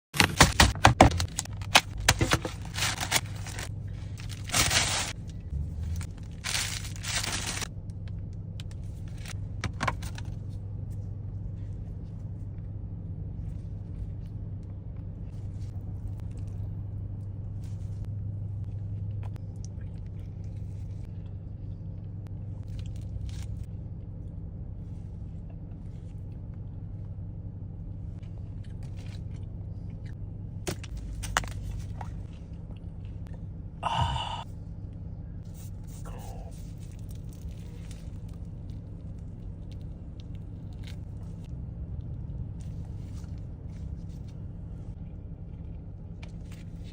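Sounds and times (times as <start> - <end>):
paper crinkling and tearing: 0.2 - 5.2, 5.9 - 7.7
steady low hum: 0.2 - 46.9.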